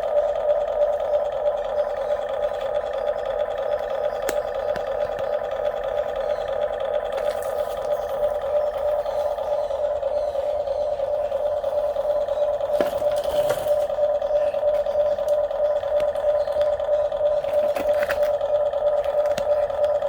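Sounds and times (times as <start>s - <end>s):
small electric motors whining: 0.0s - 20.0s.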